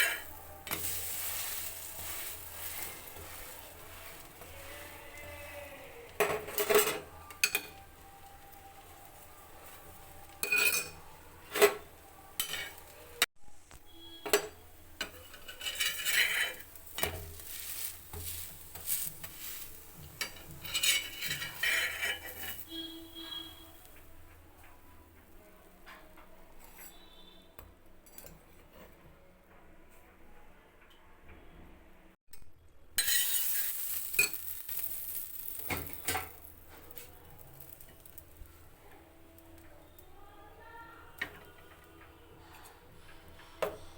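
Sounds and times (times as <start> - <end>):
metal utensils scraping cookware: 0.0 - 13.3, 14.0 - 24.0, 33.0 - 38.6
bread sizzling in a pan: 0.0 - 24.0, 33.0 - 41.3
utensil clinking against pan: 10.3 - 12.8.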